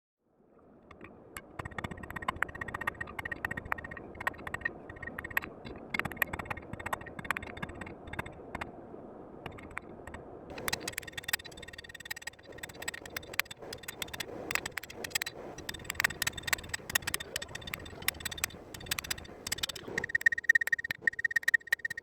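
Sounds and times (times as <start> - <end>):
light metallic clicks and taps: 9.4 - 22.0
steady rushing noise: 9.4 - 22.0.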